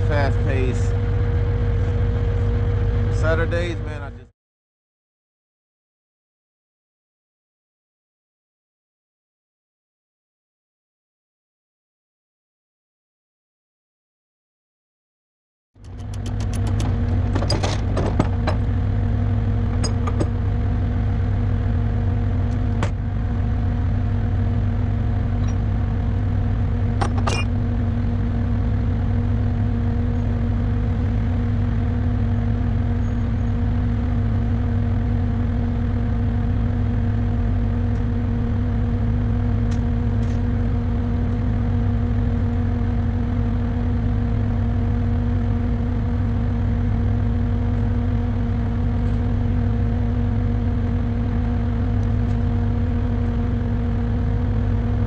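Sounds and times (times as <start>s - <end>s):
heavy diesel engine running: 0.0s - 4.3s, 15.8s - 55.0s
sharp metallic clicks and knocks: 15.8s - 18.7s, 19.7s - 20.4s, 27.0s - 27.5s.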